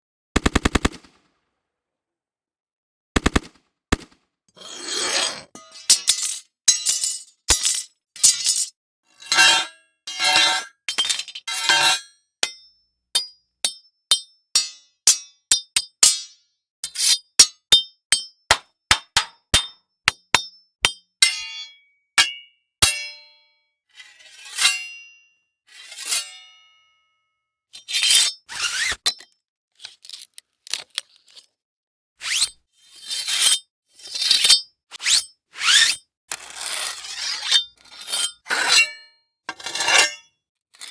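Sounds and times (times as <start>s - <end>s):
metal scraping and ringing: 4.6s - 12.6s
ringing metal clanks: 5.6s - 8.7s, 20.3s - 23.4s.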